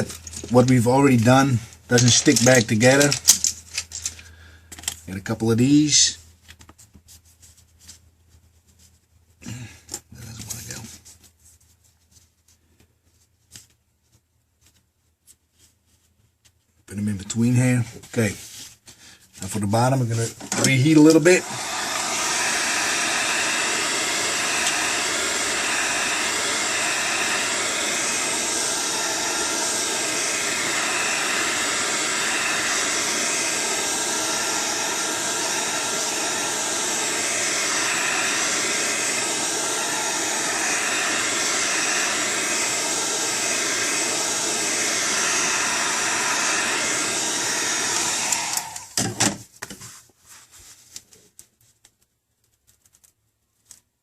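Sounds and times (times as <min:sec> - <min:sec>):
hot-air blower running: 0:20.5 - 0:49.3.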